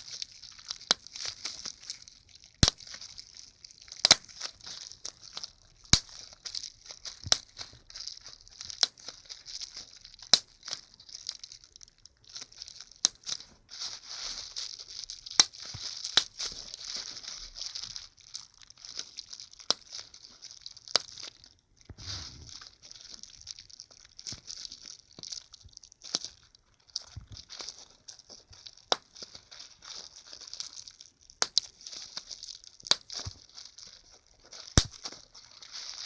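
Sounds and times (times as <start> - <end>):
bubble wrap crinkling: 0.0 - 36.0.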